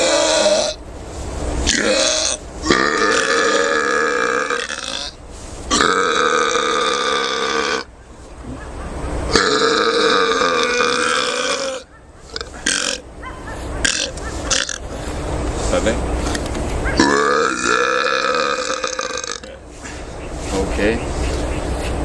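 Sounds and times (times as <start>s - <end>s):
person belching: 1.7s - 7.9s, 9.3s - 11.8s, 12.7s - 13.0s, 17.0s - 19.6s.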